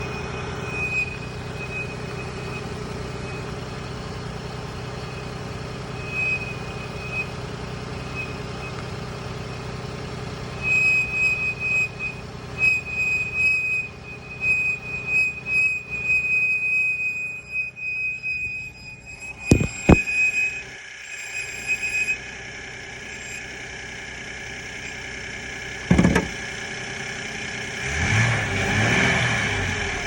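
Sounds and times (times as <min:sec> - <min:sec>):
high-pitched squeal: 0:00.0 - 0:03.6, 0:05.0 - 0:08.8, 0:17.9 - 0:22.2, 0:23.0 - 0:23.6, 0:25.9 - 0:26.5
van engine hum: 0:00.0 - 0:30.0.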